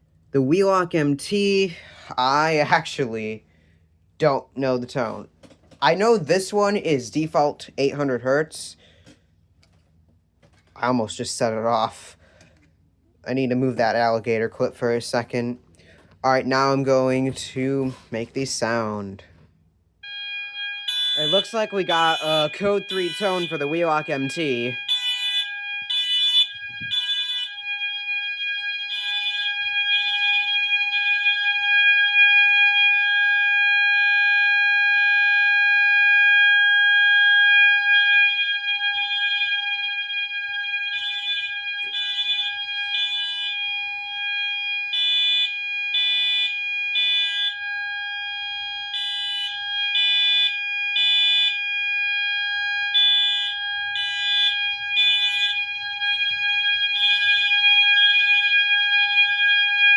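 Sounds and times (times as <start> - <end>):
alarm steady tone: 20.0 - 59.9
fire alarm horn pulses: 20.0 - 59.9.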